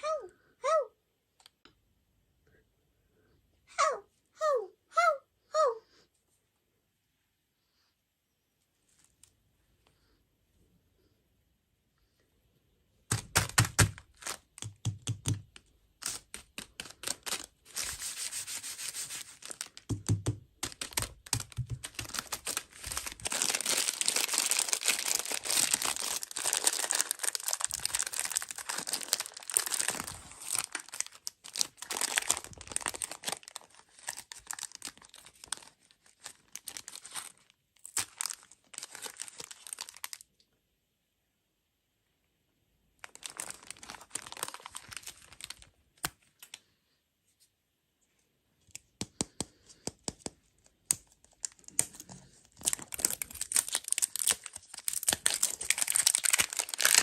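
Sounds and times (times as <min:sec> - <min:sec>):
plastic packaging crinkling and tearing: 0:13.1 - 0:14.8, 0:16.0 - 0:19.9, 0:20.6 - 0:40.3, 0:43.0 - 0:46.6, 0:50.8 - 0:57.0.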